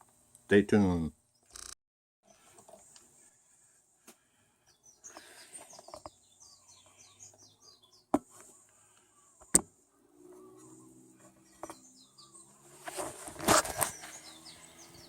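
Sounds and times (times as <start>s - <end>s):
birds chirping: 1.1s - 15.0s
sharp clicks: 1.5s - 1.8s.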